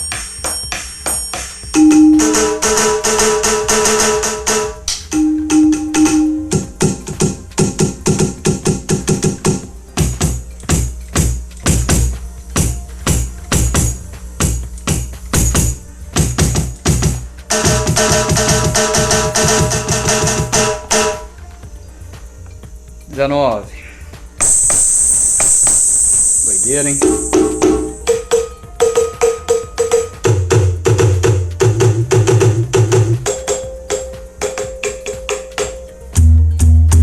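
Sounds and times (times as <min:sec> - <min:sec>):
electronic drum hits: 0:00.0 - 0:21.4, 0:24.4 - 0:37.0
sustained pitched tones: 0:24.4 - 0:28.1.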